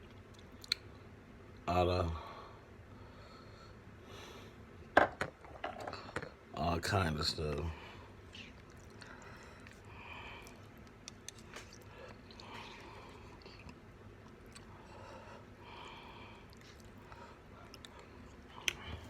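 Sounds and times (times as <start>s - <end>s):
wet mouth clicks: 0.1s - 0.9s, 10.4s - 12.7s, 18.6s - 18.9s
quiet chewing of food: 7.9s - 19.0s.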